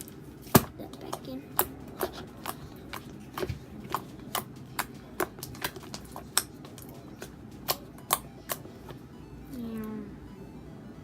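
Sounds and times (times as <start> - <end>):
slime squelching with wet clicks: 1.0 - 9.0.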